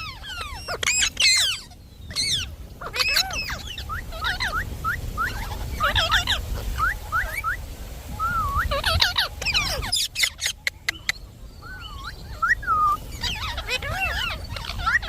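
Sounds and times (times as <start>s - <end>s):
bird chirping whistled notes: 9.9s - 13.5s.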